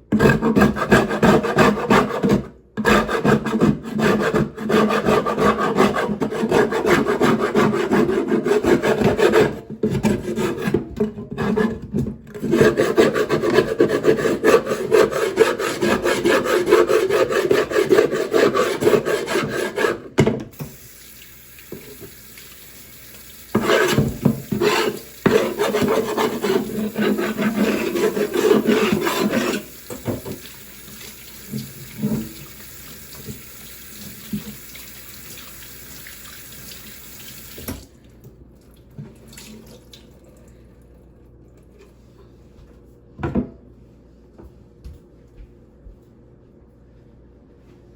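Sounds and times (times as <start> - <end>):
salt scrubbed on wooden board: 23.5 - 29.7.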